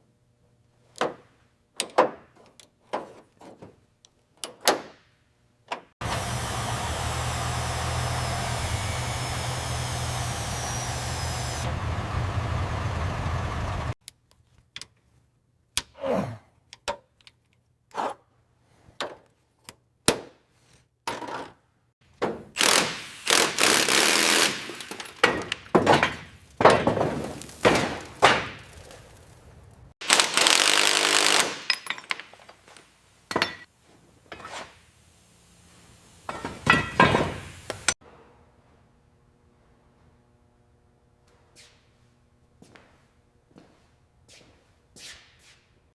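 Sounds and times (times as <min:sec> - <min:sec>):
engine running: 0:06.0 - 0:14.0, 0:34.8 - 0:38.0
power tool bursts: 0:06.0 - 0:14.0, 0:22.6 - 0:25.5, 0:30.0 - 0:32.8, 0:34.2 - 0:38.0
metal knocks and clanks: 0:36.3 - 0:37.9.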